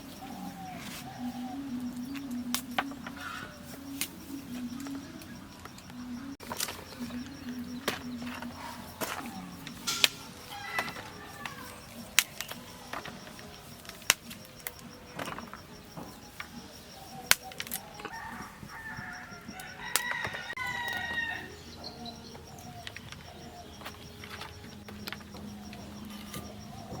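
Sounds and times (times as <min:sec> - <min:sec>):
rooster crowing: 0:08.4 - 0:12.0, 0:17.5 - 0:22.9.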